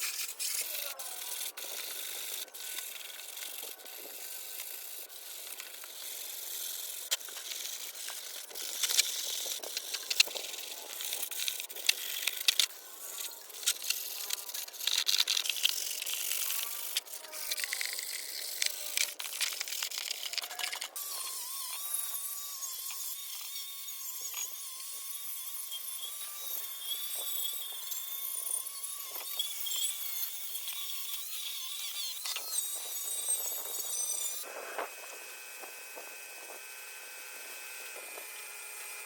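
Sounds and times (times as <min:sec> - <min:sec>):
scraping and rubbing metal parts: 0:00.0 - 0:21.0
sharp clicks and rattles: 0:07.1 - 0:21.0.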